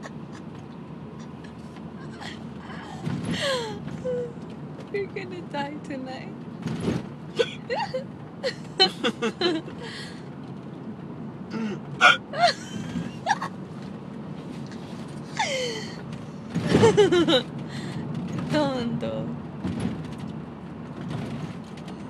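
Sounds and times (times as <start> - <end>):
person hiccuping: 7.4 - 8.0, 11.5 - 12.6.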